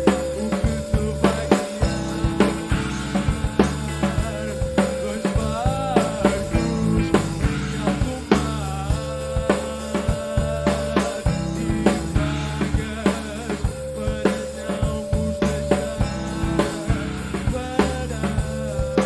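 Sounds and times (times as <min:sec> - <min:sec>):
bass guitar: 0:00.0 - 0:19.0
drum kit beat: 0:00.0 - 0:19.0
held keyboard or guitar notes: 0:00.0 - 0:19.0.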